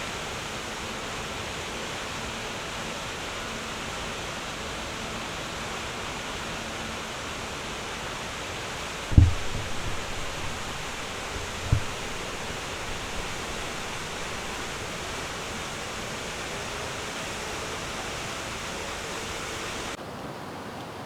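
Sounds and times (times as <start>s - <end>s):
low thump on microphone: 9.1s - 19.3s
waterfall rushing: 9.1s - 20.0s.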